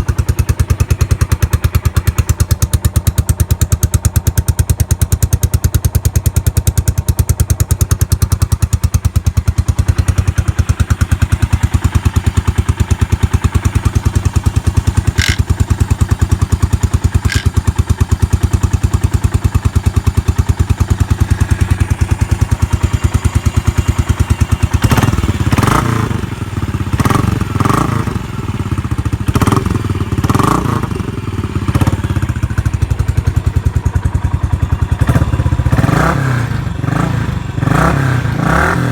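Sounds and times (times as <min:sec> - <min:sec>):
motorcycle engine idling and revving: 0:00.0 - 0:38.9.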